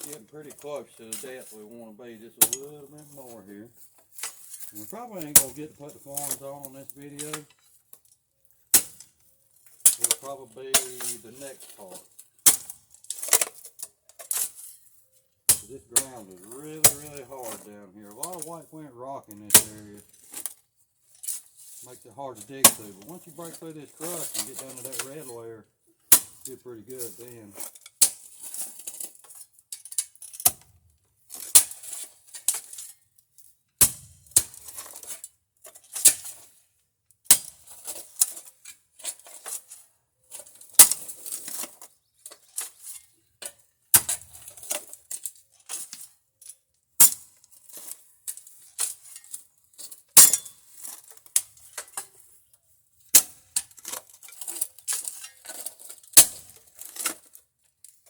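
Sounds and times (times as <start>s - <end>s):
scraping and crunching soil: 0.0s - 58.0s
digging tool striking rocky ground: 2.4s - 3.4s, 4.0s - 7.5s, 8.7s - 14.8s, 15.5s - 18.6s, 19.4s - 20.5s, 21.2s - 25.4s, 26.1s - 33.0s, 33.8s - 36.6s, 37.3s - 39.7s, 40.4s - 45.0s, 47.0s - 49.5s, 50.2s - 52.2s, 53.0s - 57.3s.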